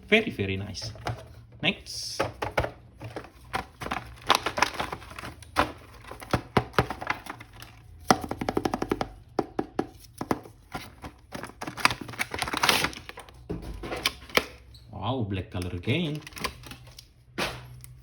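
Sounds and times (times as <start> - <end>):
packaging crinkling: 2.5 - 8.6, 10.1 - 13.4, 15.9 - 18.0.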